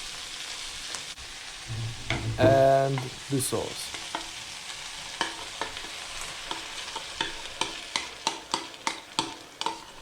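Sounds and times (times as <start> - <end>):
noodles sizzling in frying pan: 0.0 - 10.0
utensil knocking and scraping pan: 1.7 - 3.1, 6.5 - 10.0.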